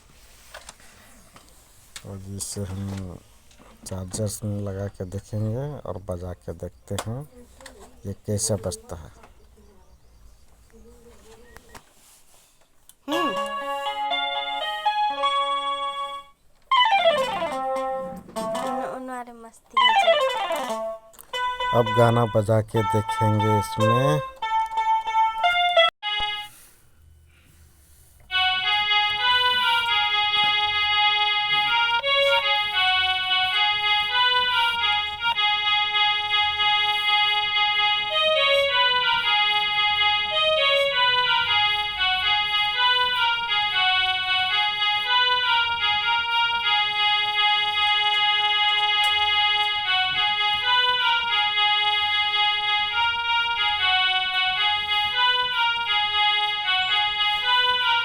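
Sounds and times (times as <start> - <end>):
toy keyboard melody: 13.1 - 19.1, 19.7 - 26.6, 28.3 - 58.0.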